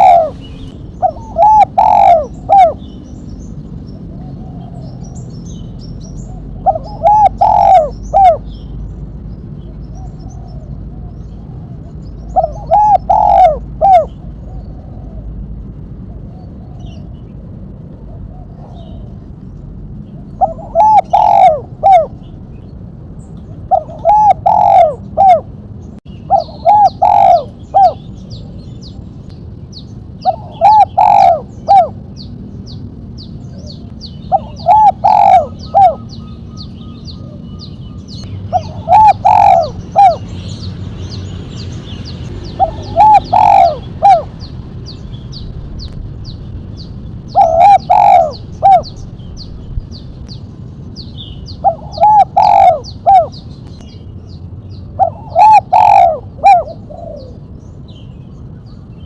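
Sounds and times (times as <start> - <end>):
dove cooing: 0.0 - 3.0, 4.0 - 5.4, 6.1 - 8.6, 9.9 - 15.5, 20.2 - 22.3, 23.7 - 25.5, 26.3 - 28.5, 30.2 - 32.3, 33.6 - 40.4, 42.5 - 44.4, 47.3 - 49.1, 51.5 - 53.4, 55.0 - 57.4.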